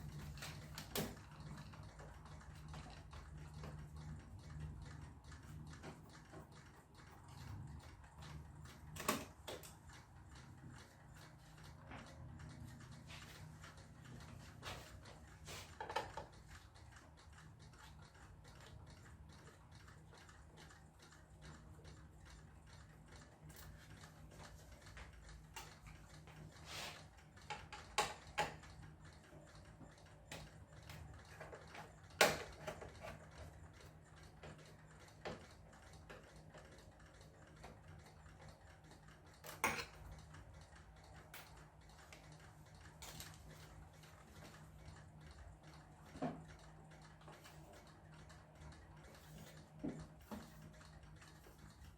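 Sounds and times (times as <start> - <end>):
tools and parts clicking and knocking: 8.2 - 10.0, 15.6 - 16.5, 23.5 - 28.8, 30.3 - 36.7, 39.2 - 40.4.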